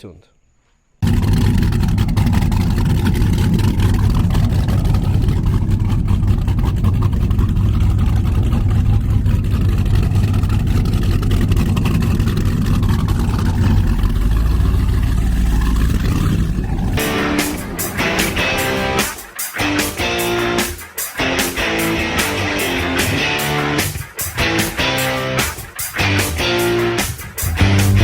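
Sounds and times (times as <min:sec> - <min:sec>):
speedboat engine running: 0:01.0 - 0:28.0
rushing water noise: 0:11.5 - 0:19.4.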